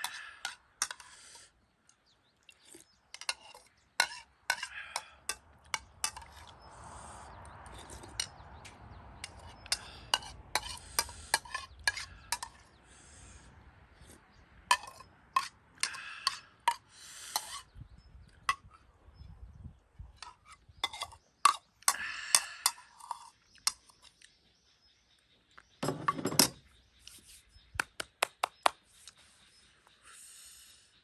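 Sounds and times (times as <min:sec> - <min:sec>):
utensils clinking on dishes: 0:14.7 - 0:16.8
dull clatter of dishes: 0:25.8 - 0:26.6.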